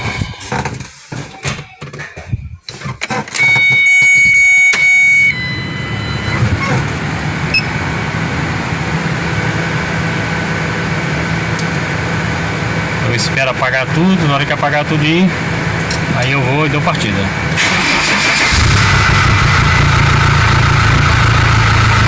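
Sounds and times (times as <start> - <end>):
diesel engine idling: 5.3 - 22.0
engine knocks: 17.4 - 22.0
starter motor whining: 17.5 - 22.0.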